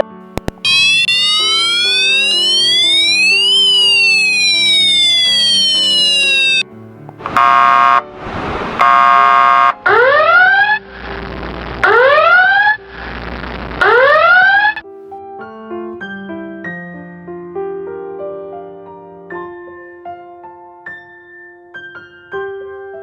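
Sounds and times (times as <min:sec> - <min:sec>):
keyboard music: 0:00.0 - 0:08.2, 0:08.8 - 0:12.9
rising siren whoops: 0:00.6 - 0:06.6, 0:08.8 - 0:10.8, 0:13.8 - 0:14.8
flat horn blasts: 0:07.3 - 0:09.9.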